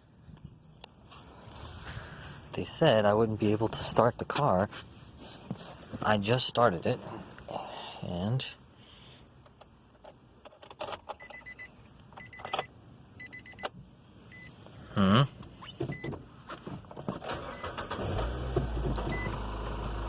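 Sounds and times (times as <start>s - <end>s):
dashboard warning beeps: 11.2s - 13.7s, 14.3s - 14.6s, 15.6s - 16.2s, 19.1s - 19.4s.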